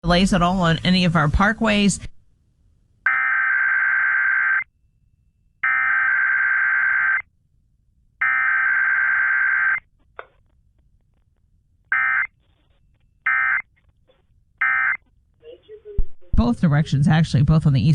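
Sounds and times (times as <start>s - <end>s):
screeching data tone bursts: 3.1s - 4.7s.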